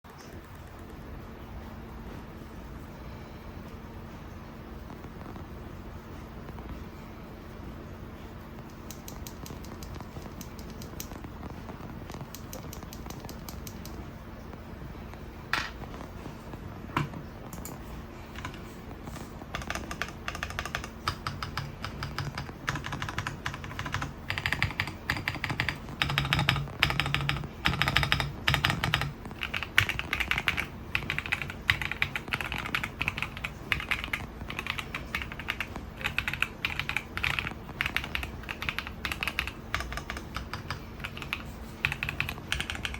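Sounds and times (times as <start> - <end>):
typing on mechanical keyboard: 8.8 - 14.0, 19.5 - 42.9.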